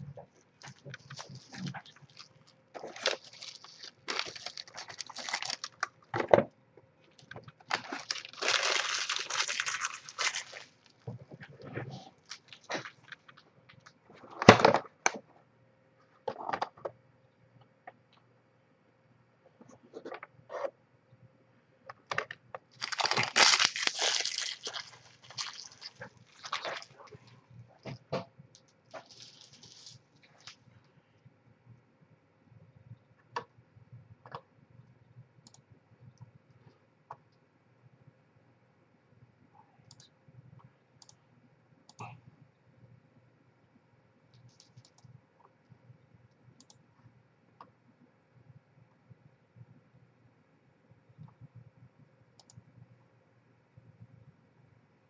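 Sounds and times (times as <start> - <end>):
packaging crinkling: 0.6 - 6.0, 7.2 - 11.0, 12.2 - 13.4, 22.7 - 27.2, 28.9 - 30.6
faint clicks: 39.8 - 41.2.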